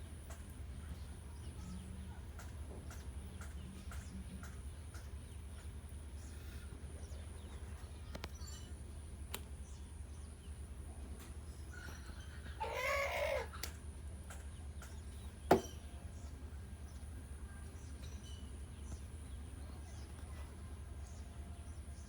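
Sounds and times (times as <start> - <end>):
chickens calling: 11.7 - 13.8.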